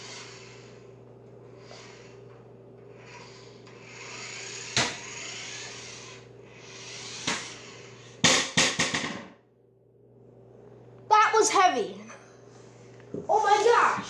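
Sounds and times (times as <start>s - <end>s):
toy car motor whirring: 0.0s - 0.9s, 1.6s - 2.2s, 2.9s - 8.2s
toy car crashing with clatter: 4.3s - 6.2s, 6.8s - 9.2s.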